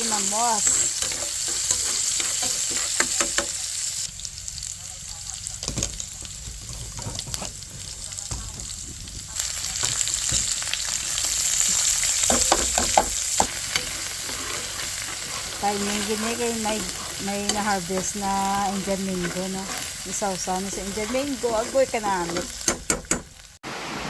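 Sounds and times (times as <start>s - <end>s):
rain hissing: 6.0s - 22.8s, 23.5s - 24.0s.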